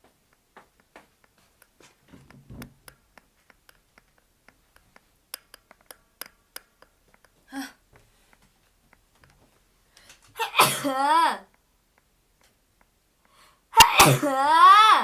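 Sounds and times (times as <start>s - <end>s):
light clicks and taps: 0.0s - 10.4s.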